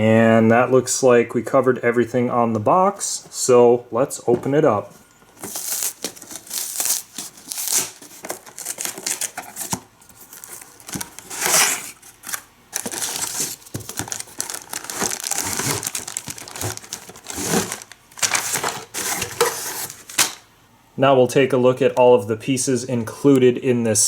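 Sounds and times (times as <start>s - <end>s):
packaging crinkling and rustling: 5.3s - 20.5s.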